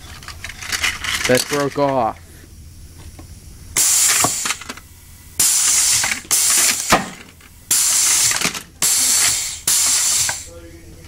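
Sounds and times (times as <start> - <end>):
compressed air hiss blasts: 3.6 - 10.7.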